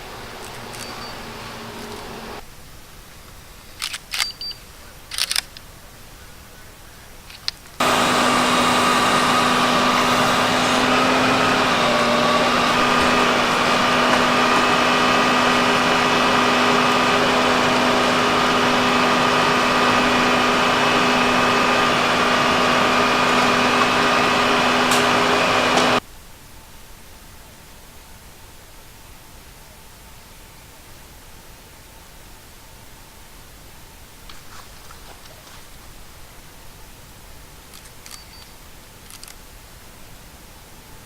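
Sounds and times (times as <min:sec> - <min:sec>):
engine running steadily: 0:00.0 - 0:02.4, 0:07.8 - 0:26.0.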